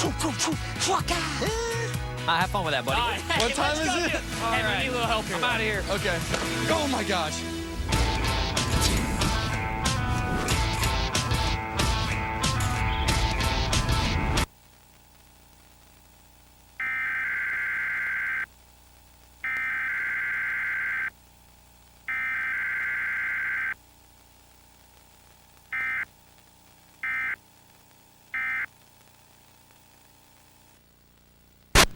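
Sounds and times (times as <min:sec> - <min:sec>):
faint steady hum: 0:07.5 - 0:31.9
buzzy two-tone digital data bursts: 0:16.8 - 0:18.5, 0:19.4 - 0:21.1, 0:22.1 - 0:23.8, 0:27.0 - 0:27.4, 0:28.3 - 0:28.7.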